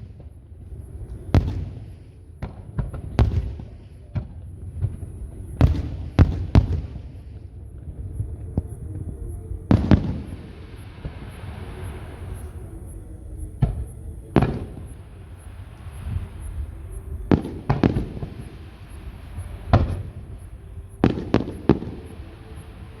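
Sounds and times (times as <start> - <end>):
fireworks bangs with echo: 0.0 - 7.6, 17.3 - 20.3, 21.0 - 22.9.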